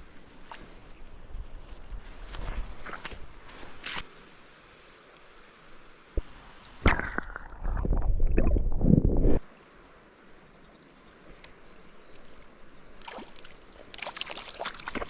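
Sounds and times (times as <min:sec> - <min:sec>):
faint steady hiss: 0:00.0 - 0:07.1, 0:09.4 - 0:15.0
water splashing and gurgling: 0:06.2 - 0:09.5, 0:12.2 - 0:15.0.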